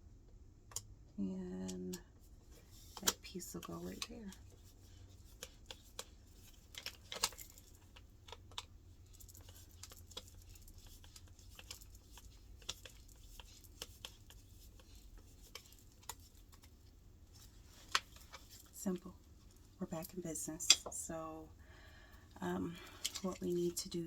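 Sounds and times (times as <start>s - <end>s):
small clicks and taps: 1.6s - 19.6s.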